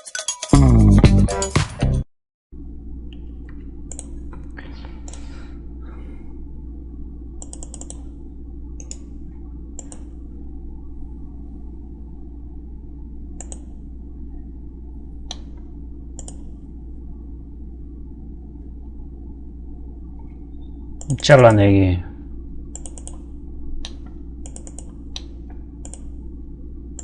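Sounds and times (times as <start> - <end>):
steady low hum: 2.6 - 27.0
computer mouse clicks: 3.9 - 5.2, 7.4 - 8.1, 8.8 - 9.1, 9.8 - 10.2, 13.4 - 13.8, 15.3 - 15.6, 16.2 - 16.5, 22.7 - 26.1.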